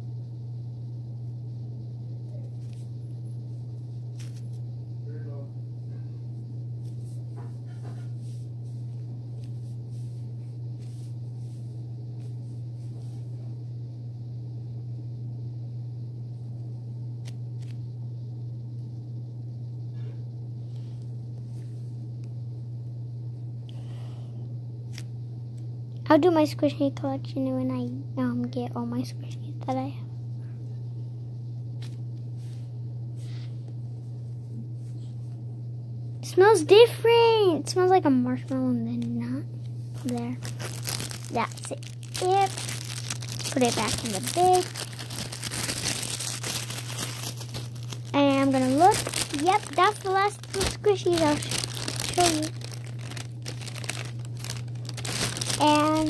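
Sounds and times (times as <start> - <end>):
steady low hum: 0.0 - 56.0
soft handling rustles: 6.8 - 13.3, 39.0 - 56.0.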